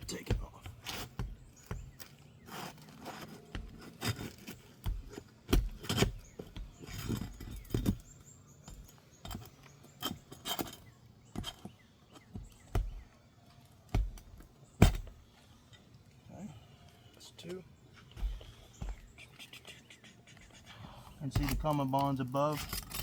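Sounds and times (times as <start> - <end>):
hand tool knocking and scraping: 0.0 - 13.1, 13.9 - 15.2, 21.1 - 23.0.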